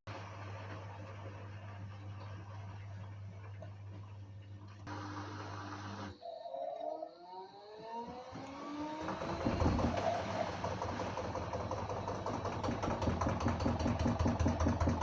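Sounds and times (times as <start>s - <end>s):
washing machine motor whining: 0.1s - 15.0s
washing machine drum knocking: 9.0s - 15.0s.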